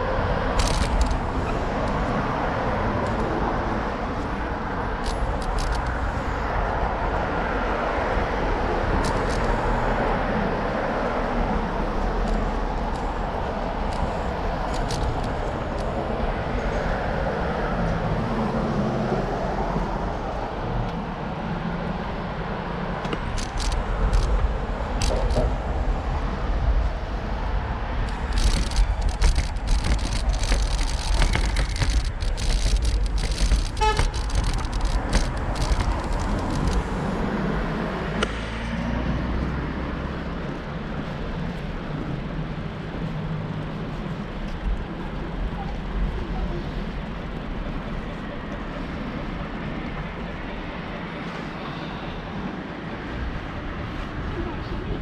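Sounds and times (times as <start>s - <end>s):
rumble of passing cars: 0.0s - 55.0s
sharp clicks and rattles: 0.5s - 2.1s, 5.0s - 6.2s, 8.9s - 9.7s, 12.2s - 16.0s, 23.0s - 25.7s, 28.0s - 37.1s.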